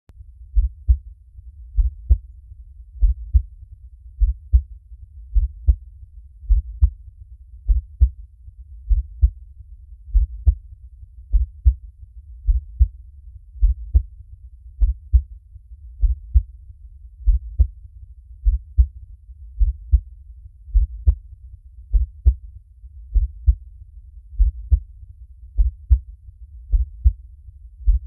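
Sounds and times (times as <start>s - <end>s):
heartbeat thumps: 0.6s - 1.0s, 1.8s - 2.2s, 3.0s - 3.5s, 4.2s - 4.7s, 5.3s - 5.8s, 6.5s - 7.0s, 7.7s - 8.2s, 8.9s - 9.4s, 10.1s - 10.6s, 11.3s - 11.8s, 12.4s - 13.0s, 13.6s - 14.1s, 14.8s - 15.3s, 16.0s - 16.5s, 17.2s - 17.7s, 18.4s - 18.9s, 19.6s - 20.1s, 20.7s - 21.2s, 21.9s - 22.4s, 23.1s - 23.6s, 24.4s - 24.9s, 25.6s - 26.1s, 26.7s - 27.2s.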